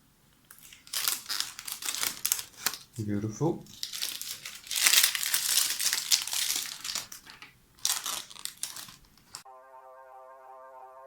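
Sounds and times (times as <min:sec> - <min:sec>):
plastic packaging crinkling: 0:00.4 - 0:09.4.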